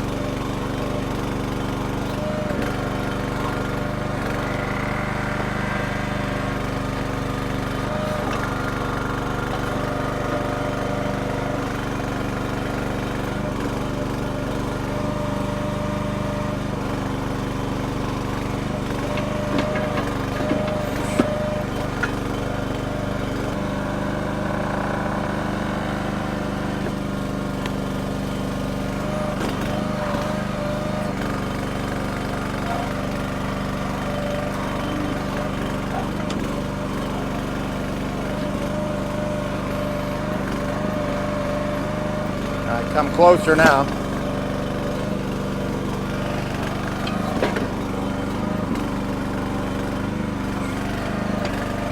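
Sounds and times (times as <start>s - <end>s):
small gas engine running: 0.0s - 51.9s.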